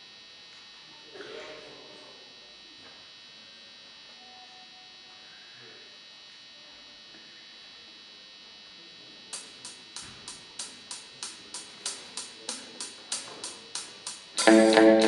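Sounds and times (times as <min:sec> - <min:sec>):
faint guitar amplifier hum: 0:00.0 - 0:15.0
hi-hat count-in ticks: 0:09.3 - 0:15.0.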